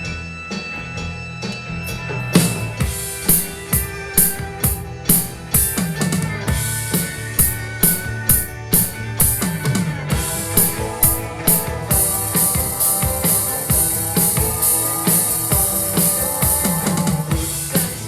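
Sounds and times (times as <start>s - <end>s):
recorded band song: 0.0s - 18.0s
rock drum kit playing: 0.0s - 18.0s.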